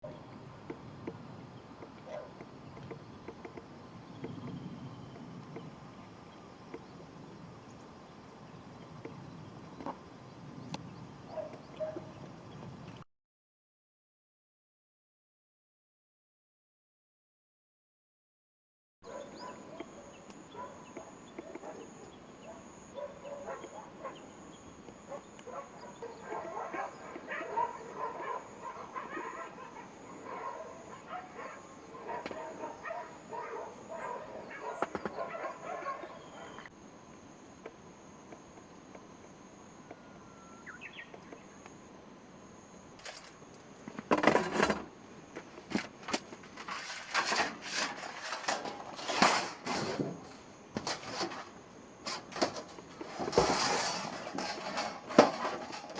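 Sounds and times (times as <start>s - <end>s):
birds calling in chorus: 19.1s - 36.7s, 39.9s - 41.6s.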